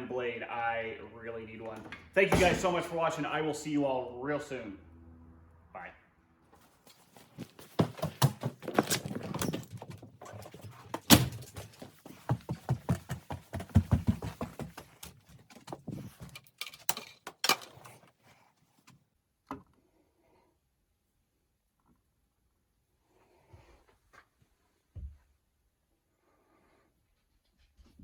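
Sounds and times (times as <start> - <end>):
knocks and clattering handling: 6.6 - 18.2.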